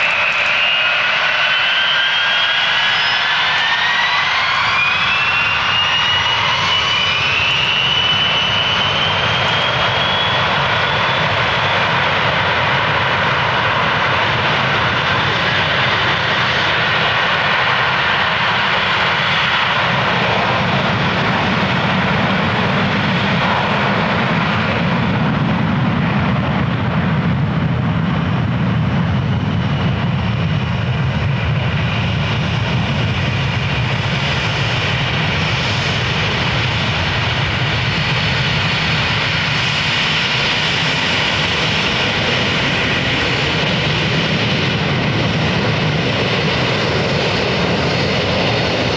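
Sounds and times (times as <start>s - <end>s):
high engine whine: 0.0s - 48.9s
jet engines at takeoff power: 0.0s - 48.9s.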